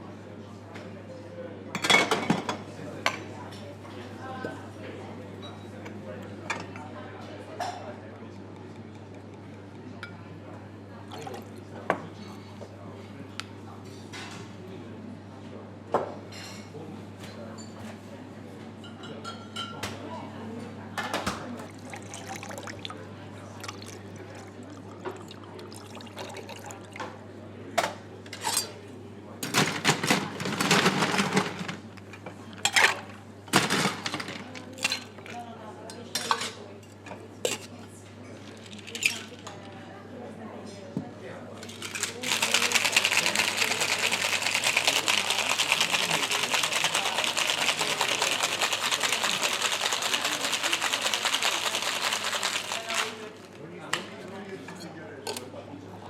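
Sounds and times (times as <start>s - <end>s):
faint background chatter: 0.0s - 56.0s
liquid pouring: 21.8s - 23.0s, 23.6s - 27.0s
rapid rattling of cocktail shaker: 41.6s - 53.6s.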